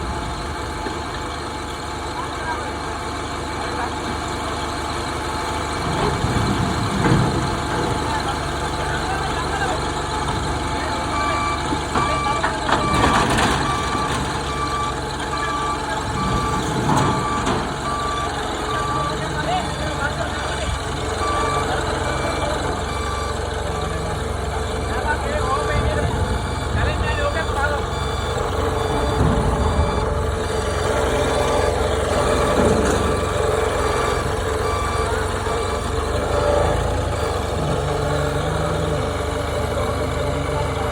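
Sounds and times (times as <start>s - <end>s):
diesel engine running: 0.0s - 40.9s
backup alarm beeping: 10.6s - 40.9s.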